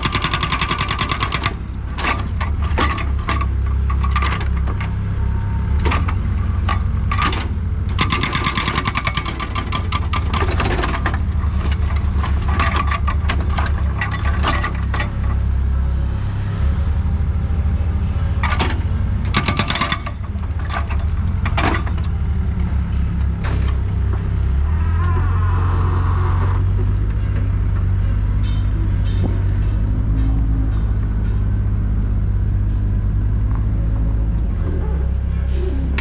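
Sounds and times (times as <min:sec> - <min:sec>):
diesel excavator engine running: 0:00.0 - 0:36.0
metallic clanks and knocks: 0:05.8 - 0:15.2, 0:28.2 - 0:32.0.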